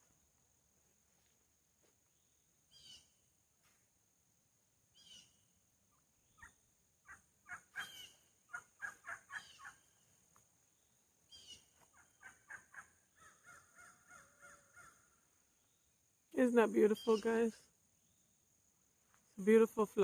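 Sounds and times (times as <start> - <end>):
high-pitched insect hum: 0.0 - 20.0
birds chirping: 4.9 - 18.4
falling bird calls: 6.3 - 15.9.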